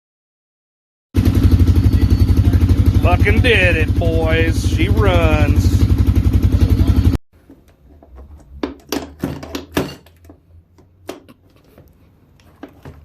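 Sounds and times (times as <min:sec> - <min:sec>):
atv engine running: 0:01.2 - 0:07.2
low hum: 0:01.2 - 0:07.2
tools clinking and knocking: 0:07.5 - 0:13.0.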